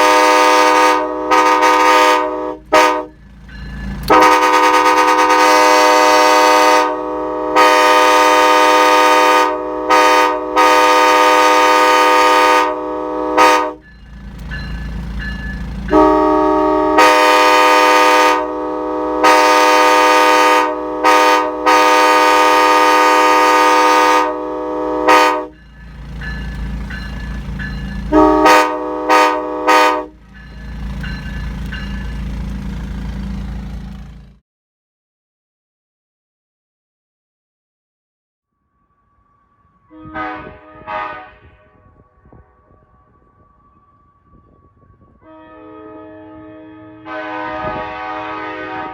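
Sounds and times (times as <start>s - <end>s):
locomotive air horn: 0.0s - 3.2s, 4.0s - 13.8s, 15.9s - 25.6s, 28.1s - 30.2s, 39.8s - 48.9s
low engine rumble: 24.2s - 34.4s.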